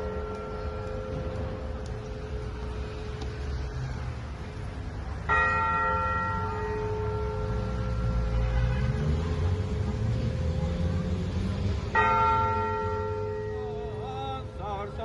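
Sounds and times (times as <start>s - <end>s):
church bell ringing: 0.0s - 3.2s, 5.2s - 8.8s, 11.9s - 15.0s.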